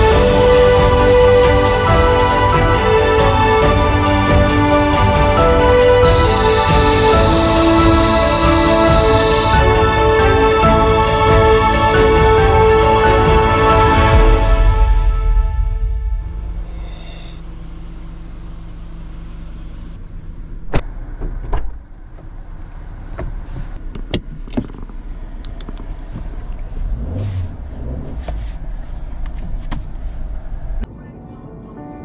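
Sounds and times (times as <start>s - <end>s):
car engine humming: 2.3s - 9.6s, 17.4s - 30.9s.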